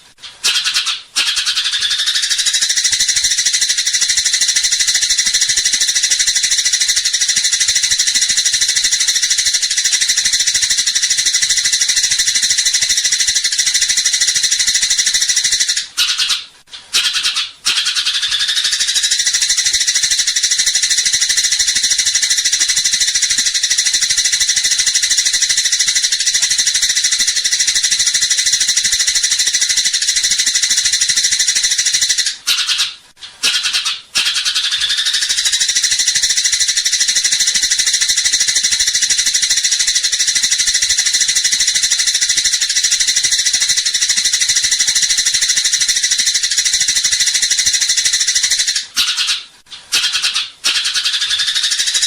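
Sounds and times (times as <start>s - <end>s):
sparrows chirping: 0.4s - 49.4s.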